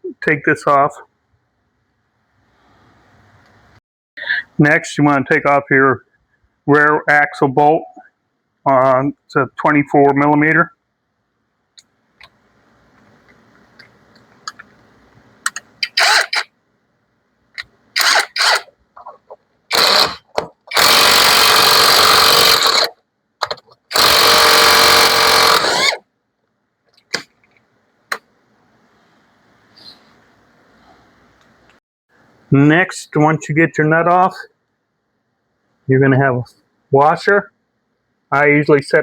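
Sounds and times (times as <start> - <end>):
power tool bursts: 15.8 - 16.5, 18.0 - 18.7, 19.7 - 22.9, 23.9 - 26.0.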